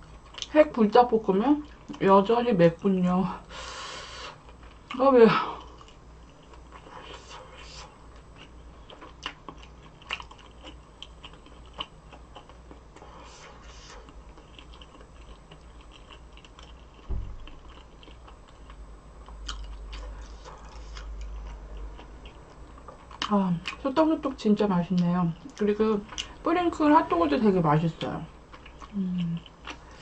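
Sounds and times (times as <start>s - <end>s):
wet chewing mouth sounds: 5.6s - 23.8s, 28.5s - 30.0s
dull thump: 17.0s - 17.5s.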